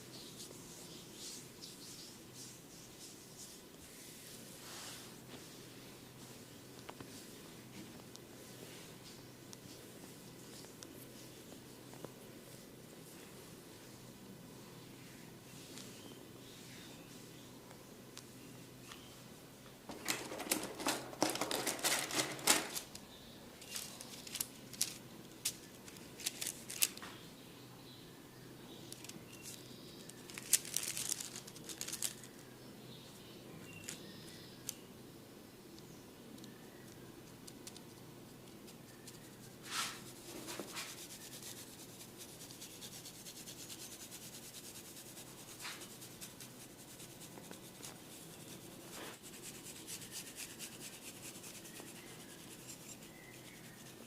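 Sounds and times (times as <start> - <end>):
hands rubbing hair and skin: 0.1 - 7.4, 38.7 - 54.0.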